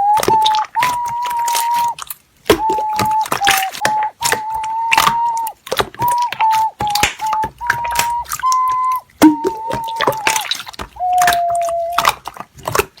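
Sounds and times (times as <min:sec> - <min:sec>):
whistle-like high melody: 0:00.0 - 0:12.2.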